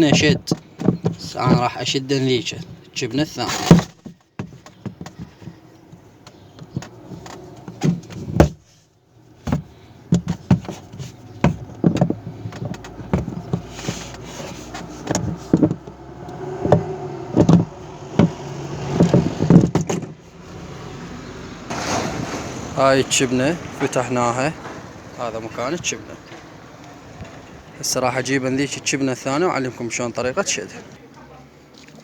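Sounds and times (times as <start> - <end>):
hands and tools knocking and scraping: 0.0 - 8.8, 9.4 - 20.3.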